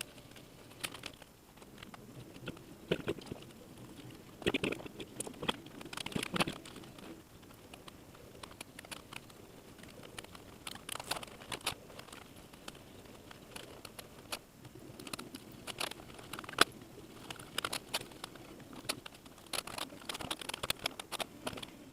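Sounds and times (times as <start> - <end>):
small parts clicking and rattling: 0.0 - 21.9.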